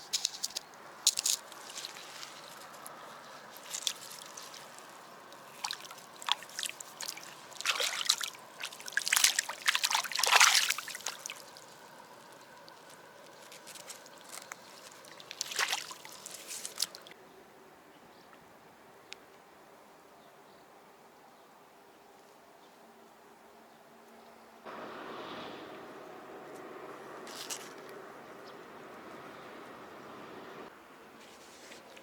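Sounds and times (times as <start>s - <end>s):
water splashing and sloshing: 0.0s - 17.2s
fish thrashing in water: 1.2s - 17.2s.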